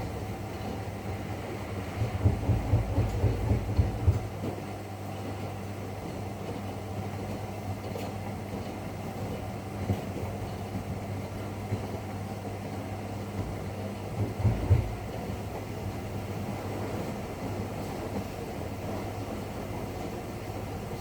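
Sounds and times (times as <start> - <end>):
washing machine humming and rumbling: 0.0 - 21.0
washing machine thumps: 2.0 - 4.3.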